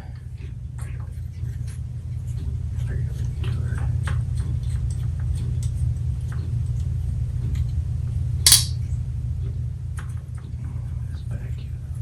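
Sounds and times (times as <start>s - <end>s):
steady low hum: 0.0s - 12.0s
handling clicks: 8.5s - 8.8s
sharp metallic clink: 8.5s - 8.8s.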